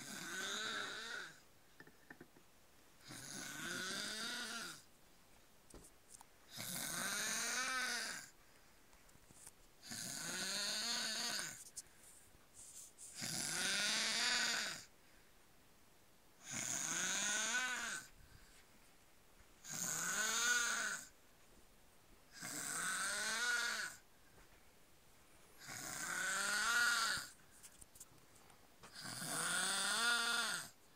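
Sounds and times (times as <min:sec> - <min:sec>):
man snoring: 0:00.0 - 0:01.4, 0:03.0 - 0:04.8, 0:06.5 - 0:08.3, 0:09.8 - 0:11.6, 0:13.2 - 0:14.9, 0:16.4 - 0:18.1, 0:19.6 - 0:21.1, 0:22.3 - 0:24.0, 0:25.6 - 0:27.3, 0:28.9 - 0:30.8.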